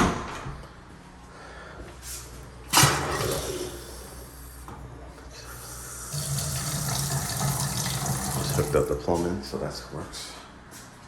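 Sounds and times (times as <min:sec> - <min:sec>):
water running from faucet: 0:05.7 - 0:08.9.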